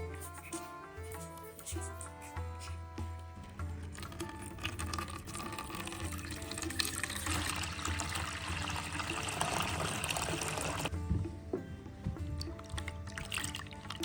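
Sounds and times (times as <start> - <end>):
soft background music: 0.0 - 14.0
water pouring: 3.8 - 10.9, 12.3 - 14.0.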